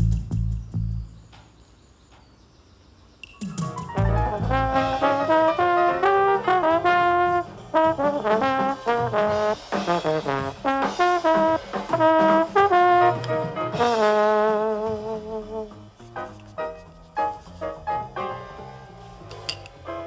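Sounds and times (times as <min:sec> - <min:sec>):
trombone playing jazzy melody: 0:03.5 - 0:19.3.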